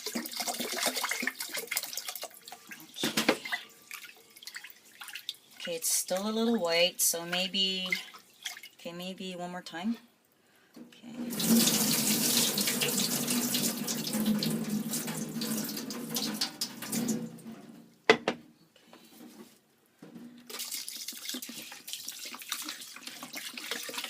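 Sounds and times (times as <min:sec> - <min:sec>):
tap water running into bowl: 0:00.0 - 0:05.4, 0:11.3 - 0:17.3, 0:20.5 - 0:24.0
rice stirred in water: 0:00.0 - 0:06.3, 0:20.5 - 0:24.0.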